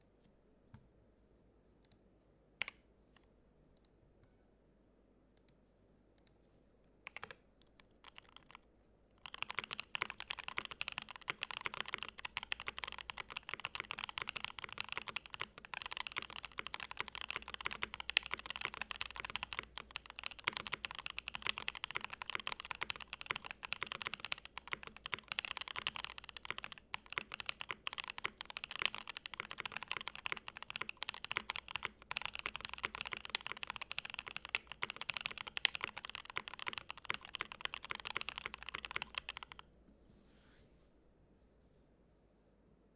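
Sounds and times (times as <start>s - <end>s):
mechanical keyboard typing: 7.1s - 7.4s, 8.0s - 8.6s, 9.2s - 39.6s.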